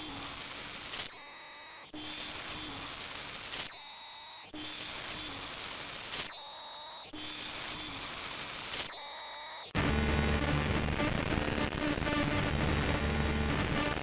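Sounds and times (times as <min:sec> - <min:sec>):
high ringing tones: 0:00.0 - 0:09.7.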